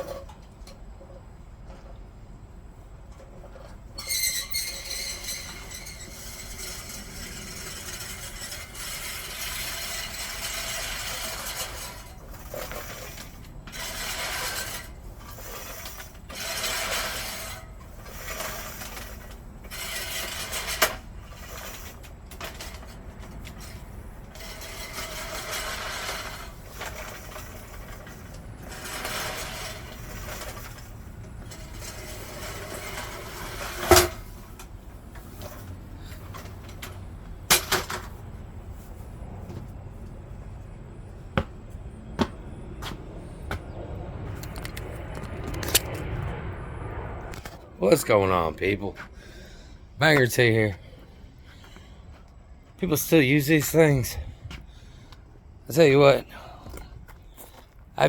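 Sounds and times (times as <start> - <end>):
push reel lawnmower blades whirring: 3.1 - 38.2.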